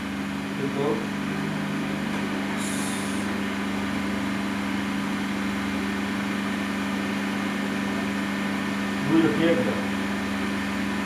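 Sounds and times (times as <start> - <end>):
mechanical hum with low drone: 0.0 - 11.0
broad hiss: 2.6 - 3.4
short high hiss: 2.6 - 3.4.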